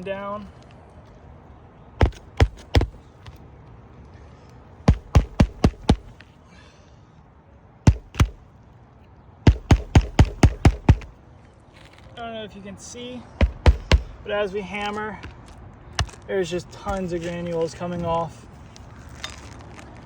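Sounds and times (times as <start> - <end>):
hammer driving nails: 2.0 - 3.0, 4.9 - 6.1, 7.9 - 8.4, 9.5 - 11.1, 13.4 - 14.2.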